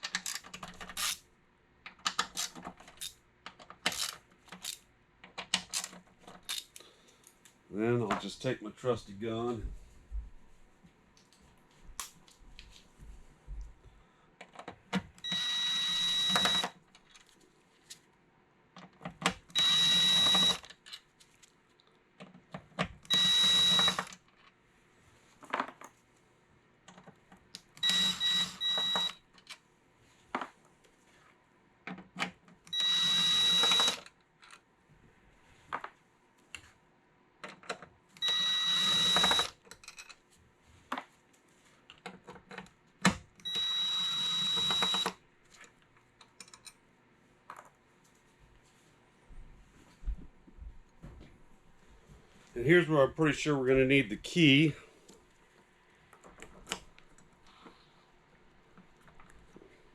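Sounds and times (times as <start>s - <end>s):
cordless power driver whining: 15.2s - 16.7s, 19.5s - 20.6s, 23.1s - 24.1s, 27.8s - 29.1s, 32.7s - 34.0s, 38.2s - 39.5s, 43.4s - 45.1s.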